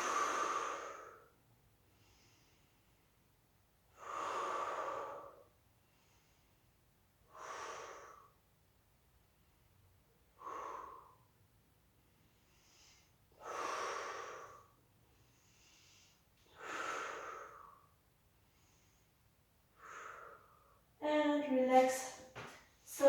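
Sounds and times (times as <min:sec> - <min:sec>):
woman breathing deeply: 0:00.0 - 0:03.0, 0:03.9 - 0:06.6, 0:07.3 - 0:08.4, 0:10.3 - 0:11.4, 0:12.1 - 0:21.0.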